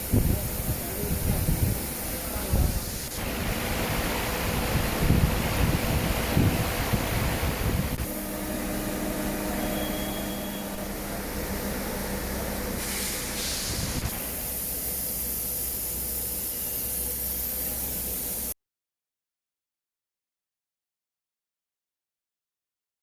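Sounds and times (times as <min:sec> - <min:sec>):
cnc router humming and hissing: 0:00.0 - 0:18.5
high hiss burst: 0:12.8 - 0:18.6.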